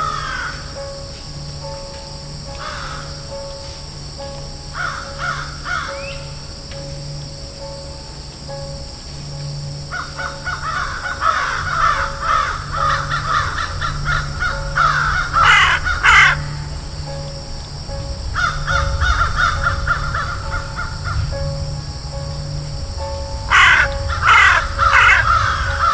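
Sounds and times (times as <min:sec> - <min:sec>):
crows cawing: 0:00.0 - 0:00.8, 0:02.5 - 0:03.4, 0:04.8 - 0:06.4, 0:09.9 - 0:16.9, 0:18.4 - 0:21.4, 0:23.4 - 0:25.9.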